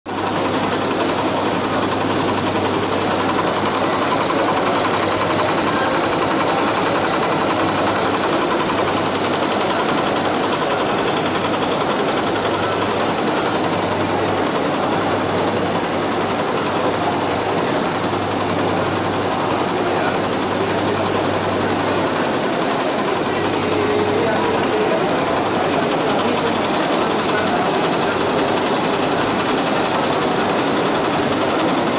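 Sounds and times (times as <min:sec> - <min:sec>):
embroidery machine stitching: 0:00.1 - 0:31.9.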